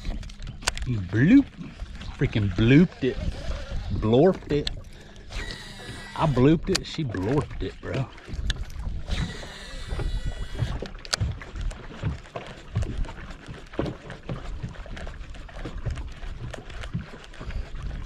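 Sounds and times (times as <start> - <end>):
wind buffeting microphone: 0.0 - 13.2
water slapping against boat hull: 0.0 - 18.0.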